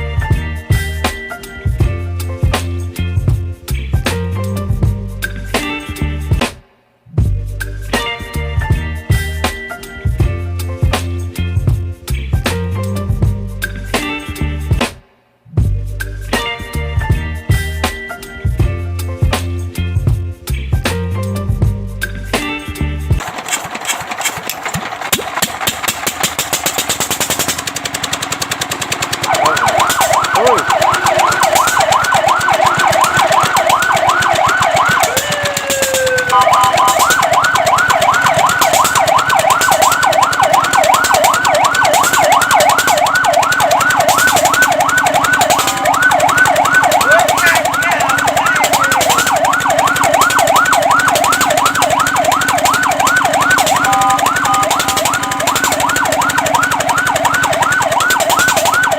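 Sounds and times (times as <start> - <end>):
fast mechanical clatter: 23.2 - 58.9
fire truck siren yelping: 23.2 - 58.9
steady held siren tones: 29.2 - 58.9.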